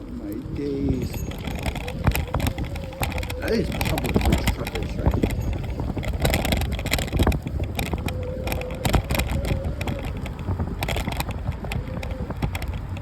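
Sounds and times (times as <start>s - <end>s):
bike rattles and knocks: 0.0s - 13.0s
wind rumbling on microphone: 0.0s - 13.0s.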